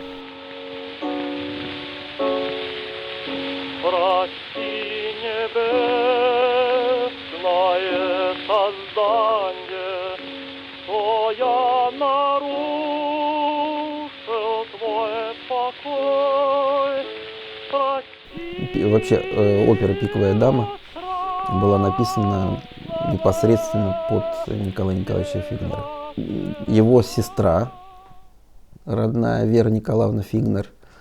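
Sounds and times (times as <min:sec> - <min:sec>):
operatic singing voice: 0:03.8 - 0:28.2
sustained accompaniment: 0:18.3 - 0:28.6.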